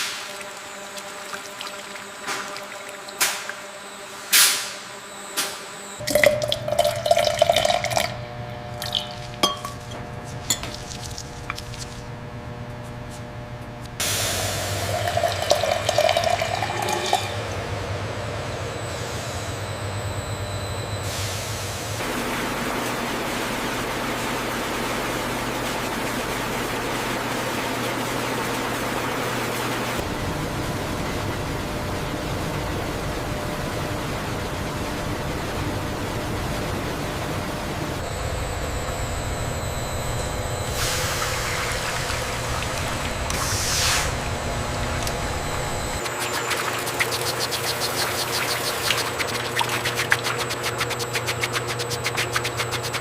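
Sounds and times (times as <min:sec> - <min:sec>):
watery rushing noise: 0:00.0 - 0:04.0, 0:40.7 - 0:53.0
machine hum: 0:00.0 - 0:53.0.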